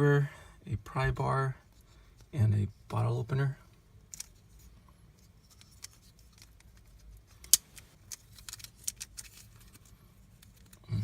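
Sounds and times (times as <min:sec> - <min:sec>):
multi-tool metal clicks and snaps: 0:07.4 - 0:09.3.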